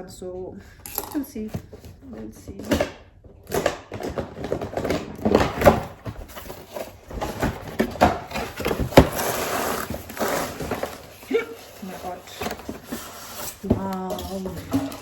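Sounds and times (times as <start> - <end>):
cardboard and plastic handled: 3.5 - 15.0
packaging rustling: 4.0 - 15.0.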